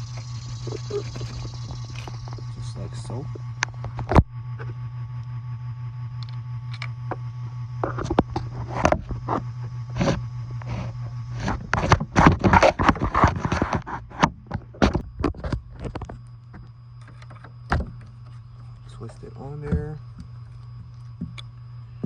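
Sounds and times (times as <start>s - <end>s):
low hum: 0.0s - 22.0s.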